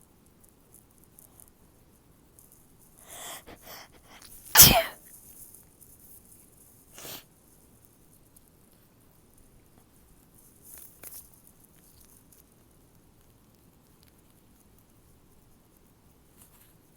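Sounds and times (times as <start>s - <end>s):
woman gasping in-breaths: 3.1s - 5.0s, 7.0s - 7.2s
woman sneezing: 3.1s - 5.0s, 7.0s - 7.2s.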